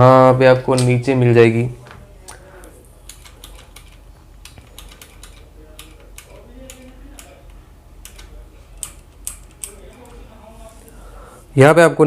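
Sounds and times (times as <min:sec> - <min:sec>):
mechanical keyboard clicking: 0:03.1 - 0:10.2.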